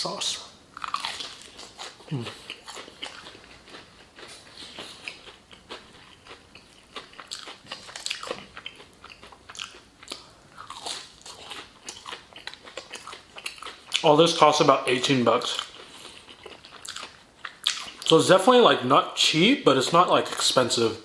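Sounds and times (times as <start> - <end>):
fried chicken crunching: 0.8 - 14.2, 15.4 - 18.2.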